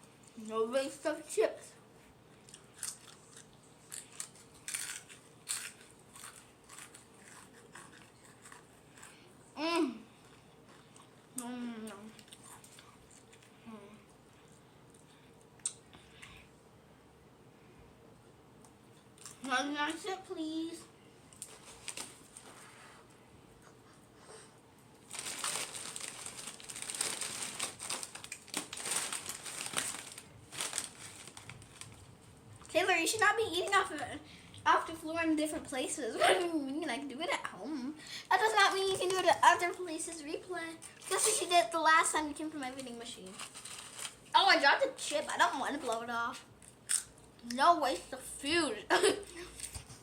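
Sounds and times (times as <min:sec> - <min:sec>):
potato chips crunching: 0:02.4 - 0:09.1, 0:25.0 - 0:32.0, 0:42.8 - 0:44.3, 0:46.6 - 0:47.2
plastic chip bag crinkling: 0:21.4 - 0:22.4, 0:25.0 - 0:32.8, 0:42.6 - 0:46.0.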